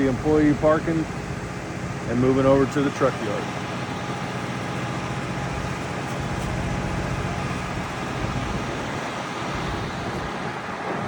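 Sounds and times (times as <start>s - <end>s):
construction site noise: 0.0s - 11.0s
truck engines humming: 0.0s - 11.0s.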